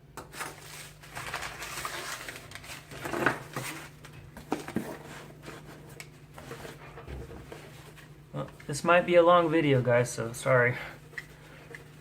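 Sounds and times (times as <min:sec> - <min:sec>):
rustling and handling noise: 0:00.2 - 0:12.0.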